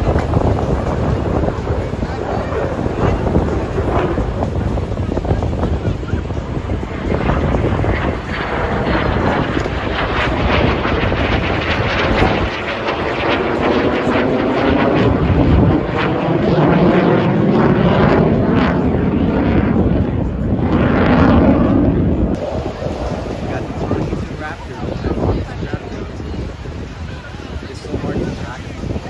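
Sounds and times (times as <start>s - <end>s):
propeller aircraft flying past: 0.0s - 26.4s.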